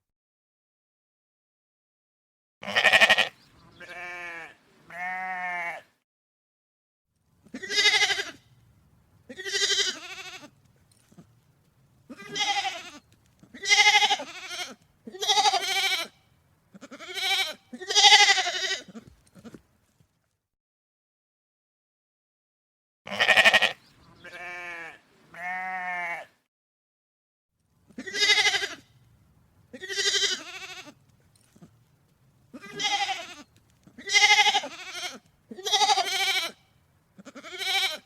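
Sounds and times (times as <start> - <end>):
sheep bleating: 2.6 - 5.9, 7.5 - 8.4, 9.3 - 10.6, 12.1 - 19.6, 23.1 - 26.4, 28.0 - 28.9, 29.7 - 31.0, 32.5 - 38.0
faint low background noise: 7.2 - 20.4, 27.6 - 38.0.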